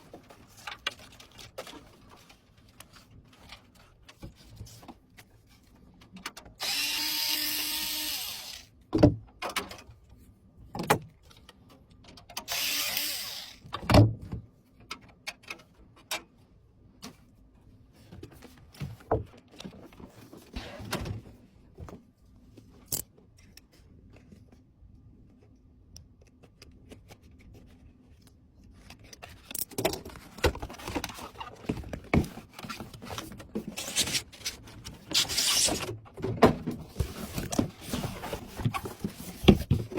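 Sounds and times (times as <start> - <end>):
electric screwdriver whirring: 6.6 - 8.7, 12.5 - 13.7.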